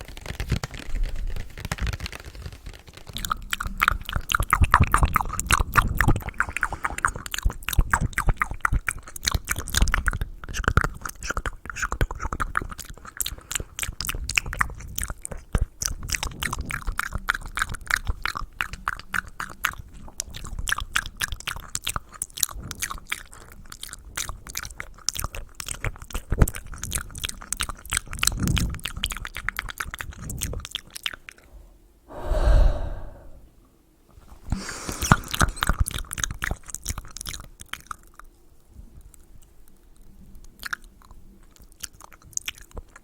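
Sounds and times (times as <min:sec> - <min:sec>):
wet mouth clicks and smacks: 0:03.0 - 0:31.4, 0:34.5 - 0:38.3.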